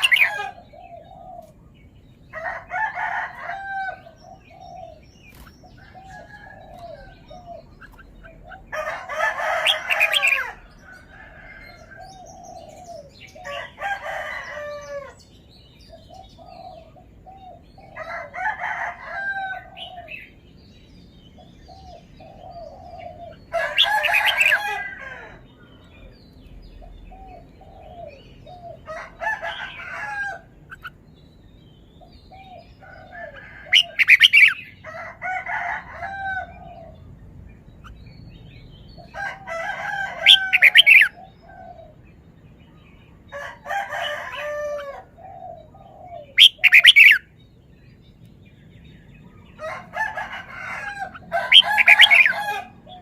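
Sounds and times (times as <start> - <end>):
bulbul singing: 0.0 - 2.0, 45.3 - 49.6.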